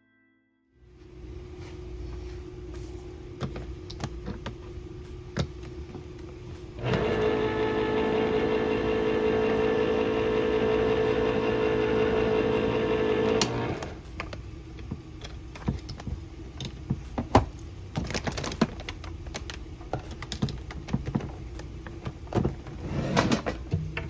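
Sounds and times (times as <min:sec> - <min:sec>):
kitchen appliance motor hum: 0:06.5 - 0:14.2.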